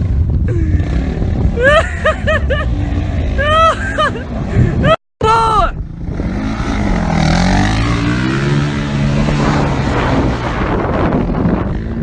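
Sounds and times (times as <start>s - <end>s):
small motorbike engine revving: 5.9s - 10.8s.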